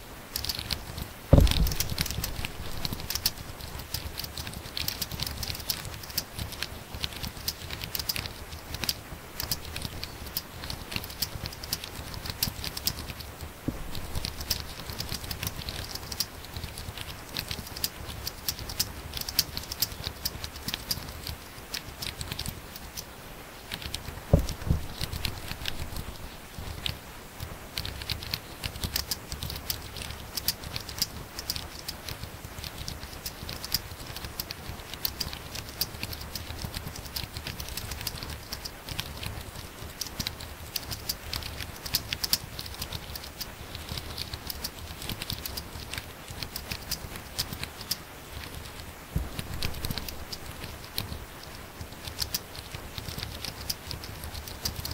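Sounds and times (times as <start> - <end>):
fast laptop keyboard typing: 0.4 - 23.0, 23.7 - 27.0, 27.7 - 54.9
loud thump: 1.3 - 2.7, 24.3 - 24.9.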